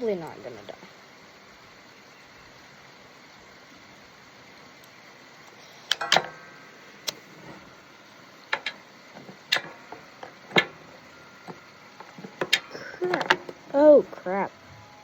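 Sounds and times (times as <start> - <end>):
hand tools clicking on metal: 8.5 - 10.9.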